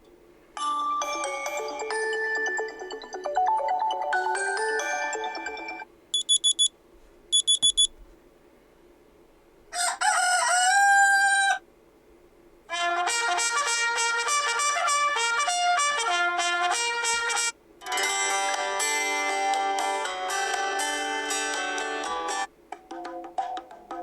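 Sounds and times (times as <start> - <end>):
chiming alarm melody: 0.6 - 6.6
quick electronic beeps: 6.2 - 6.7, 7.4 - 7.9
recorded rooster crow: 9.7 - 11.7.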